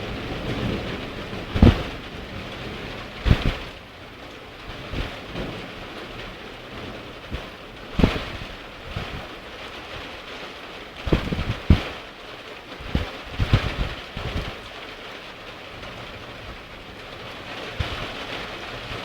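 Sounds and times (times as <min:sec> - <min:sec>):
rain falling: 0:00.0 - 0:19.0
short sharp thumps: 0:01.6 - 0:01.9, 0:03.2 - 0:03.7.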